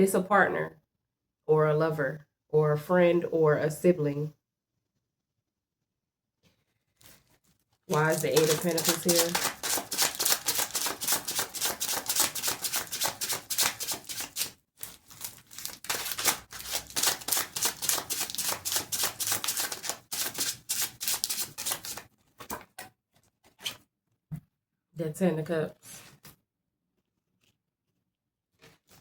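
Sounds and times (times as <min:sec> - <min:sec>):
cards being shuffled: 0:07.0 - 0:22.7.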